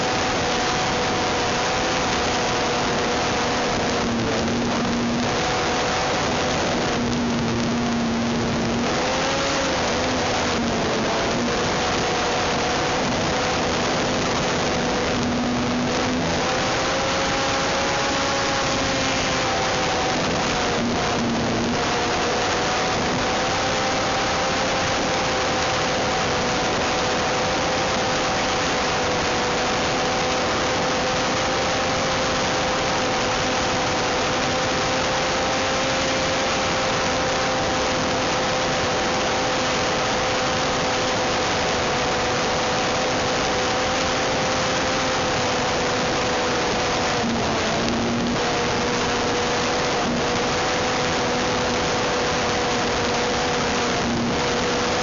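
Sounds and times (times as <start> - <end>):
model airplane engine high buzz: 0.0 - 55.0.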